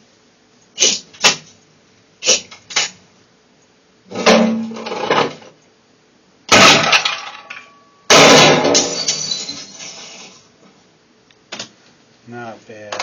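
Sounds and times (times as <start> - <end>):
loud crash: 8.1 - 10.4.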